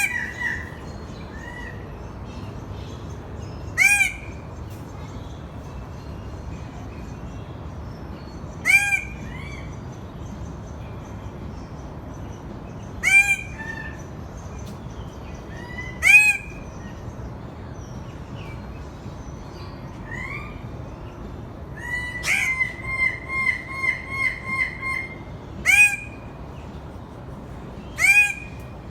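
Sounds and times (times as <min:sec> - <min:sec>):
bird of paradise calling: 0:00.0 - 0:05.3, 0:08.6 - 0:09.8, 0:12.9 - 0:14.6, 0:15.2 - 0:17.2, 0:21.7 - 0:26.8, 0:27.8 - 0:28.9
faint background bird notes: 0:00.0 - 0:28.9.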